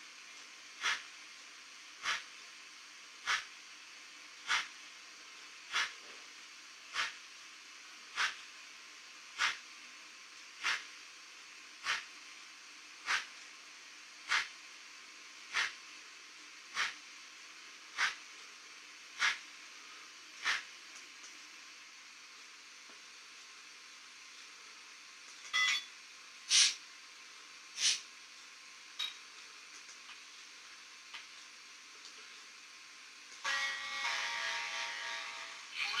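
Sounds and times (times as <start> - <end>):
model locomotive steam puffs: 0.8 - 1.1, 2.0 - 2.3, 3.2 - 3.5, 4.5 - 4.7, 5.7 - 6.0, 6.9 - 7.2, 8.1 - 8.4, 9.4 - 9.6, 10.6 - 10.9, 11.8 - 12.1, 13.0 - 13.3, 16.8 - 17.0, 18.0 - 18.2, 19.2 - 19.4, 20.4 - 20.7, 26.5 - 26.8, 27.7 - 28.1.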